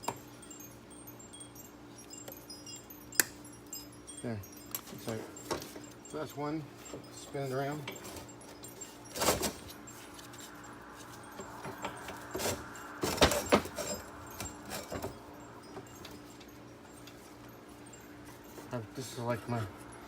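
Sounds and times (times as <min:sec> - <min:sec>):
low steady hum: 0:00.0 - 0:20.0
metal clinks and clanks: 0:00.0 - 0:20.0
pliers working at snap ring: 0:01.3 - 0:06.2.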